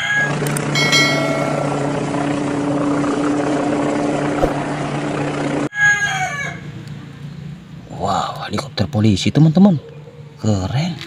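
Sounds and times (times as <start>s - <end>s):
helicopter engine and rotor: 0.3s - 5.7s.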